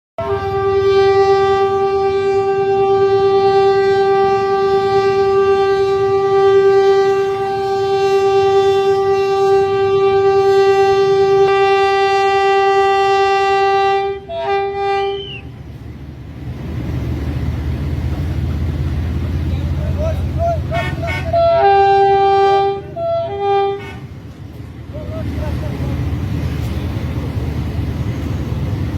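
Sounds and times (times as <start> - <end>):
loud horn blast: 0.2 - 15.5, 20.6 - 24.2
low vehicle rumble: 0.2 - 28.9.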